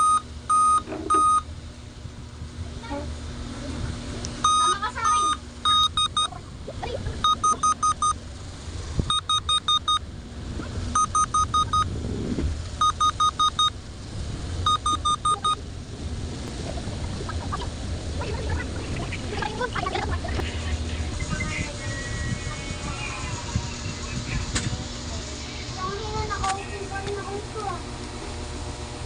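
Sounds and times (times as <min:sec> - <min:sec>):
laptop beeping: 0:00.0 - 0:01.5, 0:04.4 - 0:06.4, 0:07.2 - 0:08.2, 0:09.1 - 0:10.0, 0:11.0 - 0:11.9, 0:12.8 - 0:13.7, 0:14.6 - 0:15.6.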